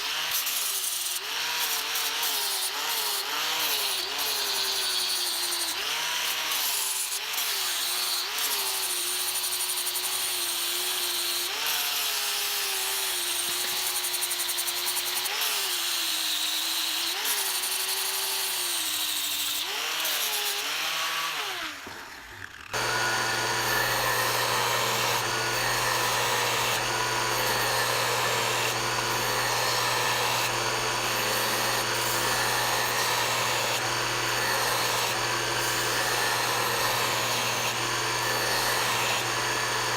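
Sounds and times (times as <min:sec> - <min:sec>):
power tool running: 0:11.2 - 0:39.9.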